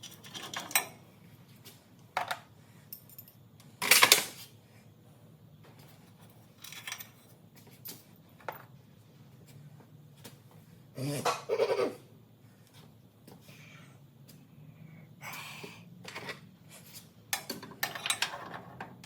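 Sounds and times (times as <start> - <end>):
hand tools and metal parts clinking: 0.0 - 1.0, 1.6 - 4.4, 5.8 - 8.7, 17.3 - 18.9.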